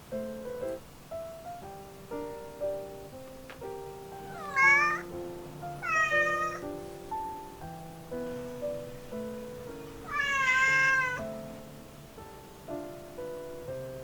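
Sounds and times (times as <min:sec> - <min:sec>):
light music with plucked notes: 0:00.1 - 0:14.0
young cat meowing: 0:04.3 - 0:05.1, 0:05.8 - 0:06.7, 0:10.0 - 0:11.2.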